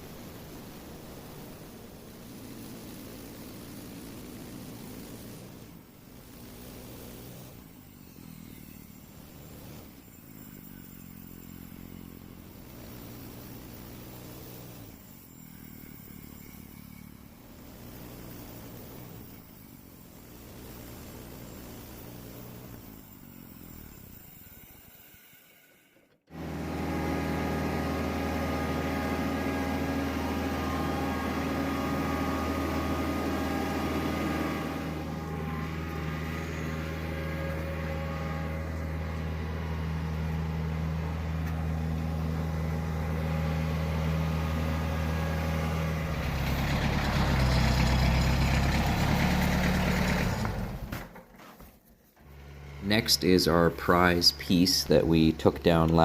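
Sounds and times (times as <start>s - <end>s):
engine running: 0.0s - 24.2s, 26.0s - 56.0s.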